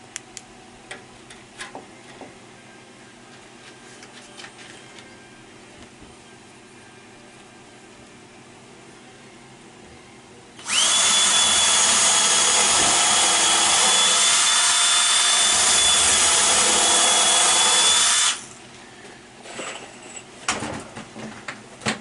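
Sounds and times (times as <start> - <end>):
power tool motor whining: 10.6 - 18.6.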